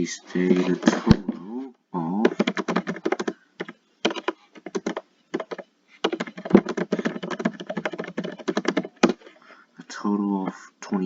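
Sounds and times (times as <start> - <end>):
computer keyboard typing: 2.2 - 9.2.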